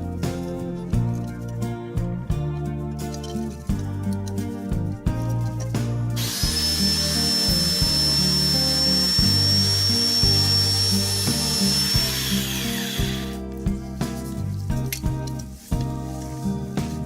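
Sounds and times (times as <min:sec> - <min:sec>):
background music: 0:00.0 - 0:17.0
electric power tool whining: 0:06.2 - 0:13.4.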